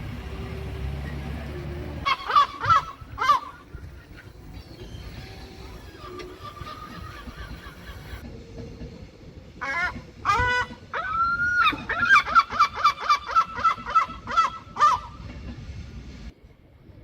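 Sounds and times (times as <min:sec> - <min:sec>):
gull calling: 0:02.0 - 0:08.2, 0:09.6 - 0:15.2.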